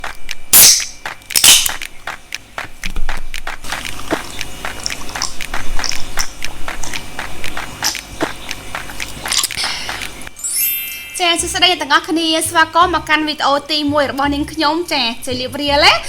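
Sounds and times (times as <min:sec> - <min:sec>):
biting and chewing: 0:00.0 - 0:10.3.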